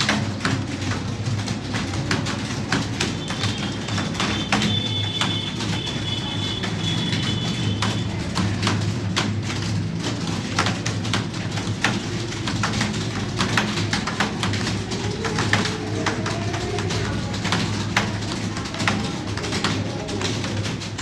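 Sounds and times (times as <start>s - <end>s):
computer keyboards clattering: 0.0s - 21.0s.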